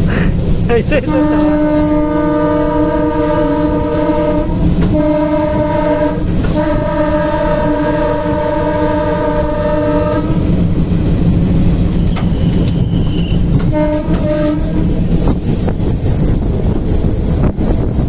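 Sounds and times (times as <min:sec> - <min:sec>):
running train rumble: 0:00.0 - 0:18.0
train horn: 0:01.0 - 0:10.6, 0:12.1 - 0:15.0.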